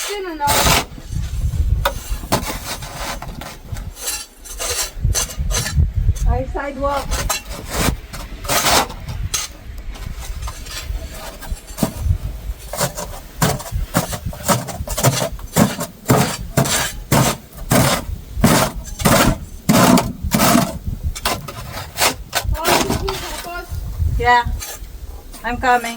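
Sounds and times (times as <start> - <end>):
snow crunching and scraping: 0.0 - 25.9.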